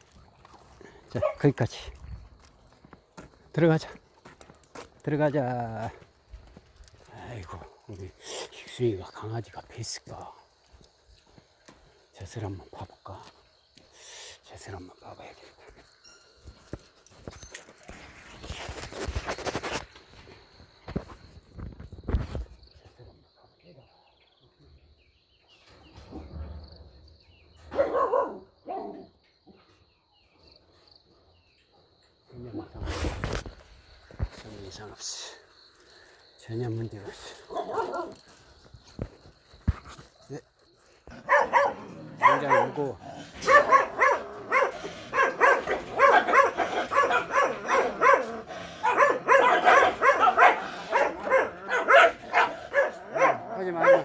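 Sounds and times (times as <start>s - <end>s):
dog barking: 1.1s - 1.5s, 27.7s - 29.1s, 37.4s - 38.2s, 41.2s - 54.0s.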